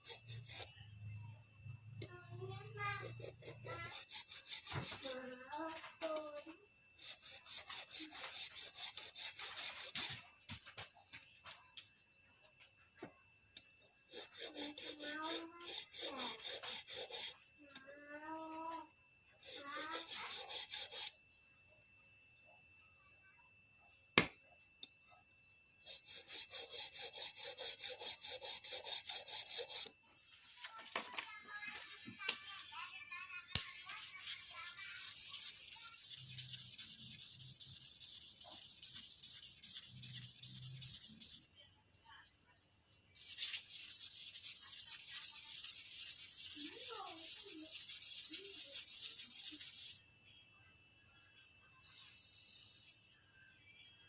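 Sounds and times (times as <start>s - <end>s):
sandpaper rubbing: 3.8s - 5.0s, 7.0s - 10.2s, 14.1s - 17.4s, 19.4s - 21.1s, 25.9s - 29.9s, 33.6s - 41.5s, 43.2s - 50.0s.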